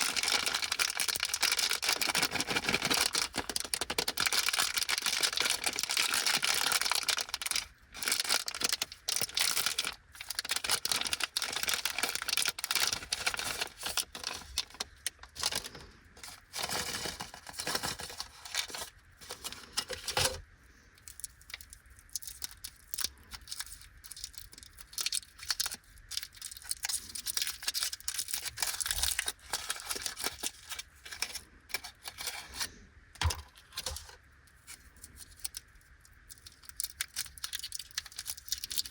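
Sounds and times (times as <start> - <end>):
packaging crinkling: 0.0 - 20.4, 21.0 - 38.9.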